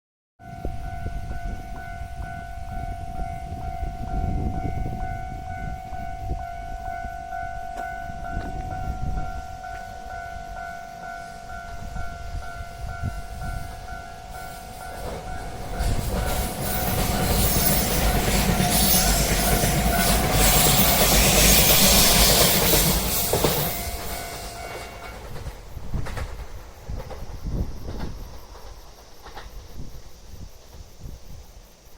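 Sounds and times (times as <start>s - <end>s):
level-crossing alarm ringing: 0.4s - 25.5s
train wheels running: 0.7s - 31.1s.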